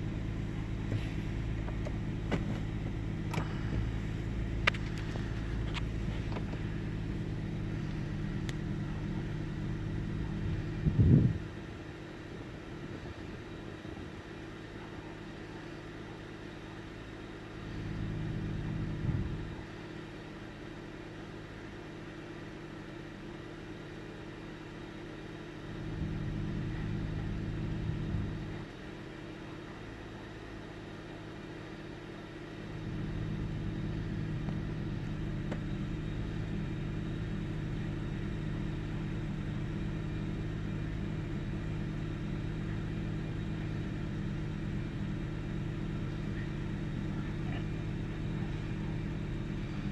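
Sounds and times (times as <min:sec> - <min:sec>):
car engine idling: 0:00.0 - 0:49.9.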